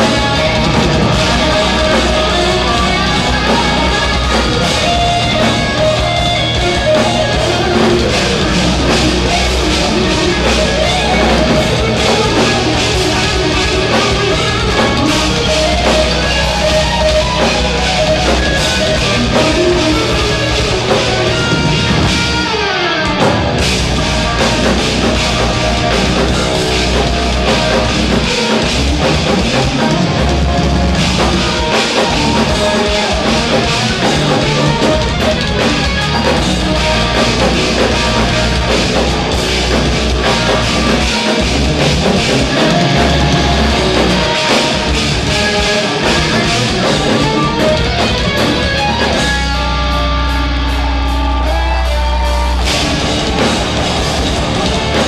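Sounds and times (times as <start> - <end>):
distorted electric guitars: 0.0 - 55.0
drum kit: 0.0 - 55.0.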